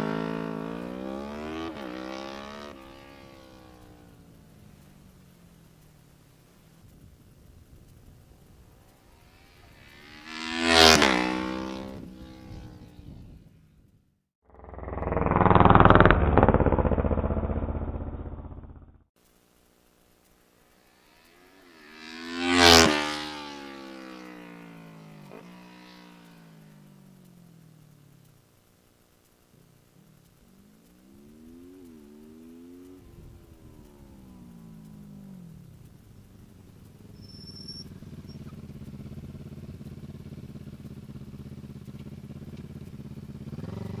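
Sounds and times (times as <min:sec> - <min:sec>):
motorcycle passing by at speed: 0:00.0 - 0:05.8, 0:07.7 - 0:13.8, 0:14.5 - 0:19.0, 0:20.8 - 0:28.3, 0:30.4 - 0:44.0.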